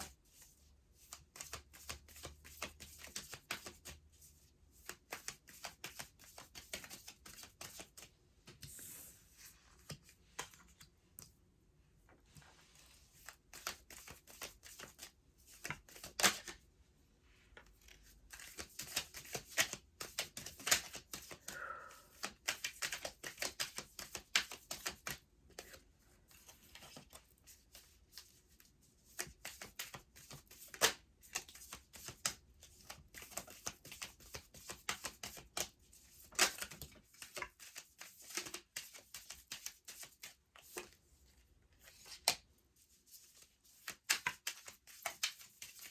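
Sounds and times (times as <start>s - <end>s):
cards being shuffled: 1.0s - 4.0s, 4.7s - 10.9s, 12.3s - 16.6s, 17.6s - 25.8s, 29.1s - 41.0s, 43.1s - 45.9s.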